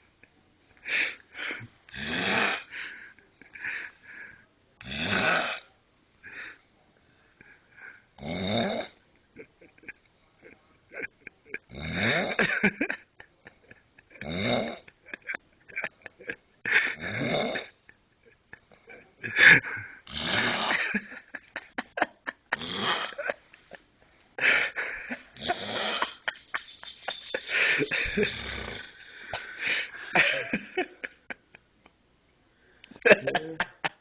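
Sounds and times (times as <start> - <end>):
man snoring: 1.9 - 2.7, 4.8 - 5.6, 8.2 - 9.0, 11.7 - 12.4, 14.2 - 14.9, 16.9 - 17.8, 20.1 - 20.9, 22.6 - 23.2, 25.4 - 26.0, 28.3 - 29.0.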